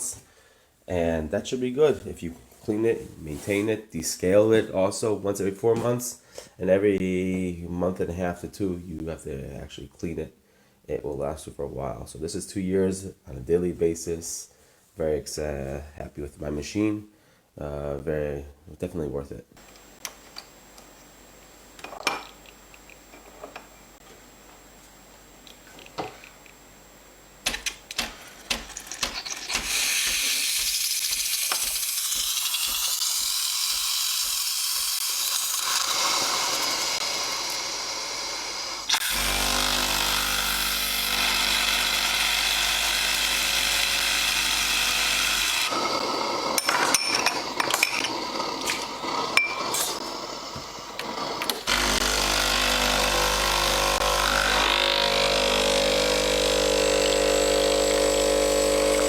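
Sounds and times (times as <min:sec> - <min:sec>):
espresso machine hiss: 0:29.5 - 0:40.8, 0:47.3 - 0:59.0
metal and cup clinks: 0:46.6 - 0:48.1
motor humming: 0:48.2 - 0:59.0.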